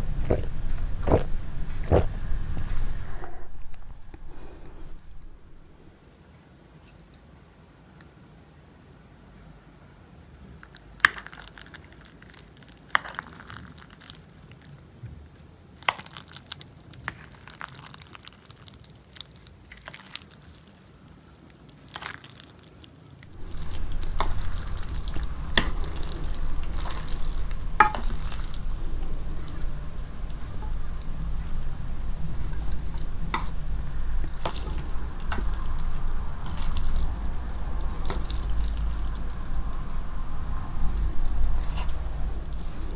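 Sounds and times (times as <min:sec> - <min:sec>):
wet eating clicks: 0:00.0 - 0:05.8
steady noisy eating sound: 0:00.0 - 0:06.0, 0:23.3 - 0:42.9.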